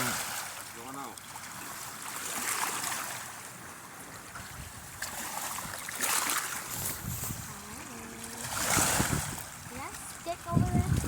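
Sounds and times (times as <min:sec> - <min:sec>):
river water rushing: 0:00.0 - 0:10.4
wind on microphone: 0:04.3 - 0:05.9, 0:06.6 - 0:11.0.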